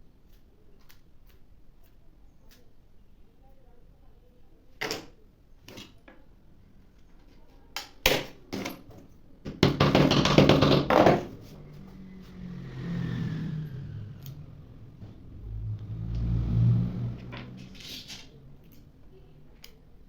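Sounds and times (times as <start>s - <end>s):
sharp knocks on wood: 9.5s - 11.3s.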